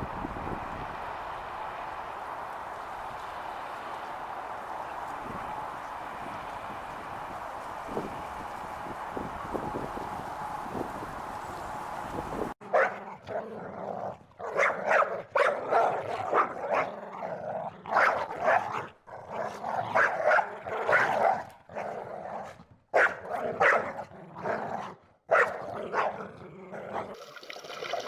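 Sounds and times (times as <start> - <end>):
steady hiss: 0.0 - 12.5
dog barking: 12.6 - 13.6, 14.4 - 17.2, 17.9 - 22.0, 22.9 - 26.2.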